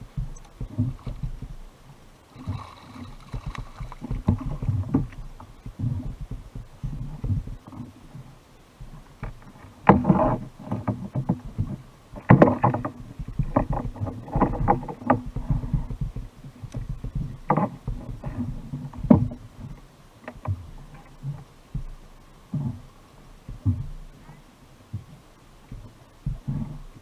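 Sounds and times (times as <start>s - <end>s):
water noise: 0.0s - 27.0s
knocks on a kayak: 9.2s - 19.4s, 23.5s - 24.0s.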